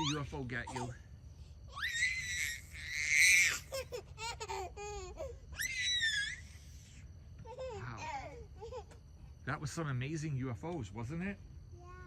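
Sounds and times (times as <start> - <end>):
high-pitched squealing cries: 0.0 - 1.0, 1.7 - 6.8.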